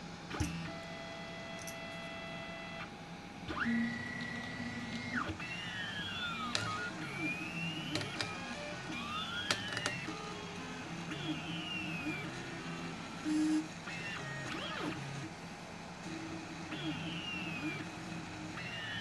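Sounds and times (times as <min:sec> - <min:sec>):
stepper motor sliding tones: 0:03.6 - 0:15.3.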